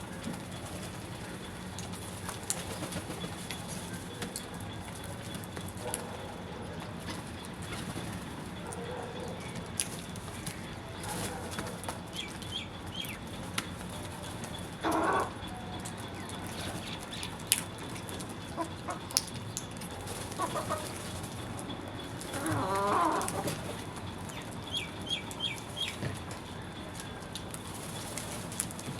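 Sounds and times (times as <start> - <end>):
birds chirping: 10.4 - 27.2.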